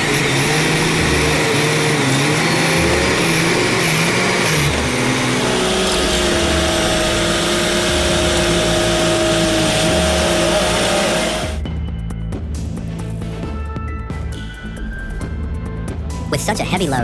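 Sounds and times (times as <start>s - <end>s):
vehicle engine running: 0.0s - 11.6s.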